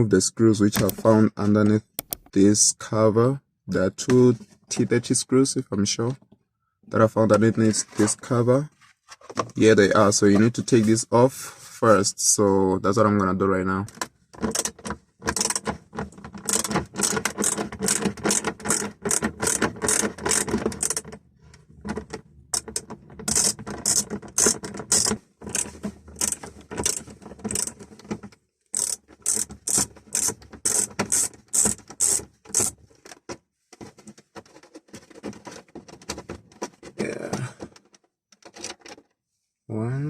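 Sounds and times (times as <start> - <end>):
ratcheting driver clicking: 2.0 - 2.3, 28.8 - 32.7.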